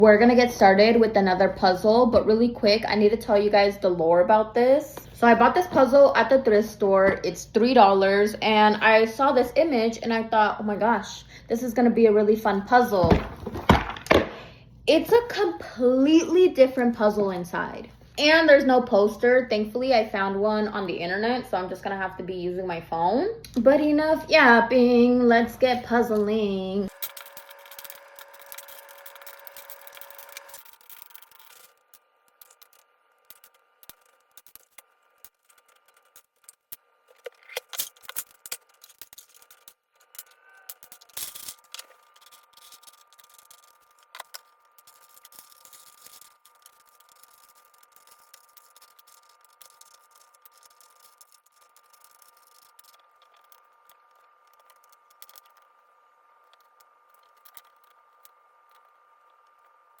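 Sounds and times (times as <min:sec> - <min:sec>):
faint steady hum: 0:00.0 - 1:00.0
puzzle pieces clicking and rattling: 0:26.9 - 0:55.8, 0:56.4 - 0:59.0.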